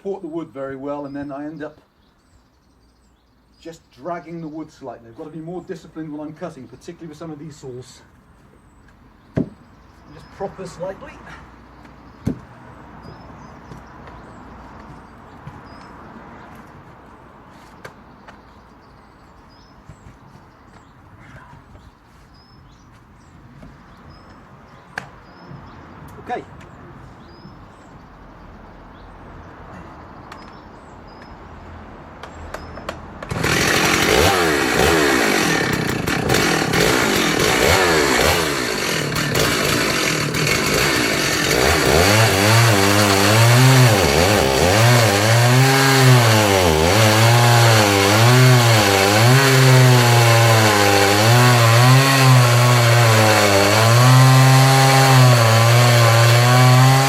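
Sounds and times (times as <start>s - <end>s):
chainsaw running: 33.2s - 57.0s.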